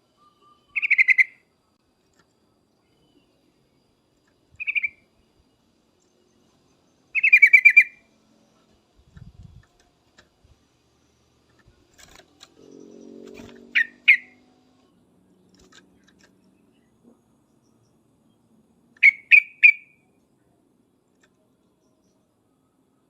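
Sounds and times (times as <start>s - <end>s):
bulbul calling: 0.1s - 1.5s, 4.5s - 5.1s, 7.1s - 8.1s, 12.6s - 14.4s, 19.0s - 20.0s.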